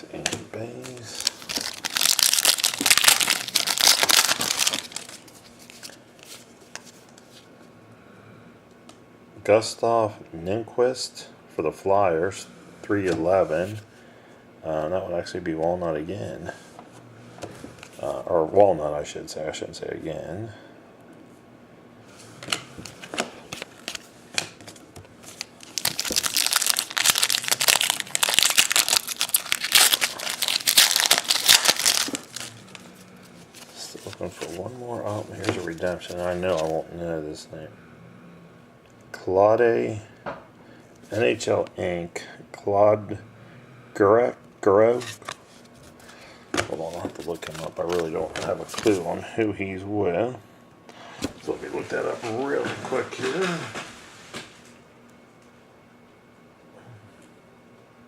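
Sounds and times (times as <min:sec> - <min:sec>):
foil wrapper crinkling: 0:00.8 - 0:06.0, 0:23.5 - 0:36.8.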